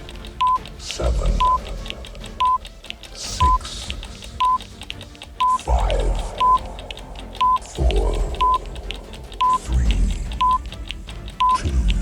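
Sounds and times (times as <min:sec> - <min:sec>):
fast ticking clock: 0:00.0 - 0:12.0
short beeps: 0:00.4 - 0:00.6, 0:02.4 - 0:02.6, 0:04.4 - 0:04.6, 0:05.4 - 0:05.6, 0:06.4 - 0:06.6, 0:07.4 - 0:07.6, 0:08.4 - 0:08.6, 0:09.4 - 0:09.6, 0:10.4 - 0:10.6, 0:11.4 - 0:11.6
voice calling out numbers: 0:05.5 - 0:10.4.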